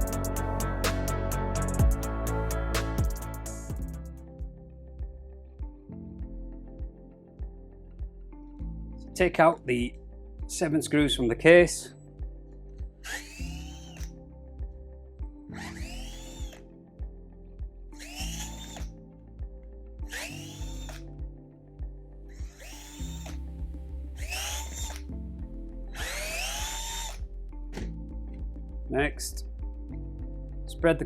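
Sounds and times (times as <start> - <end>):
background music: 0.0 - 31.0
power screwdriver whining: 13.0 - 14.1, 15.5 - 16.6, 18.0 - 18.9, 20.1 - 21.0, 22.4 - 23.4, 24.2 - 25.1, 26.0 - 27.2.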